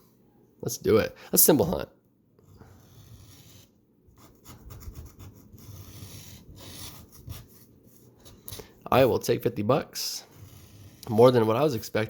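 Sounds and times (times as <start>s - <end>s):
scratching a lottery ticket: 10.0s - 11.3s.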